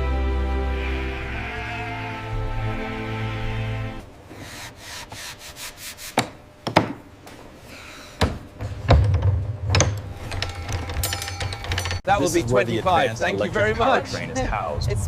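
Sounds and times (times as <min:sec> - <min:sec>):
music: 0:00.0 - 0:04.0
rubbing and scraping strokes: 0:04.3 - 0:06.2.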